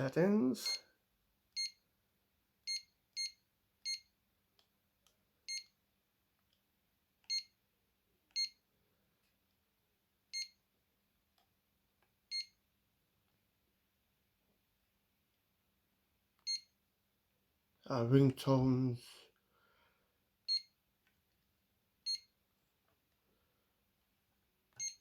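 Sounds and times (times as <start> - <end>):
mobile phone key beeps: 1.6 - 1.8, 2.7 - 4.1, 5.5 - 5.7, 7.3 - 7.5, 8.3 - 8.6, 10.4 - 10.6, 12.3 - 12.6, 16.4 - 16.7, 20.5 - 20.7, 22.0 - 22.3, 24.8 - 25.0.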